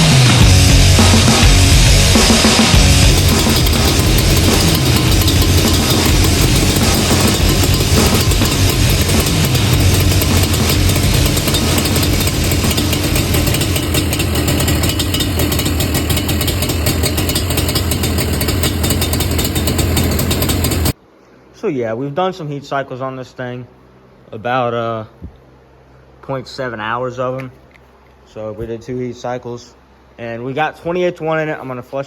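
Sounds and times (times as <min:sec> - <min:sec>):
two-stroke engine running: 0:00.0 - 0:21.0.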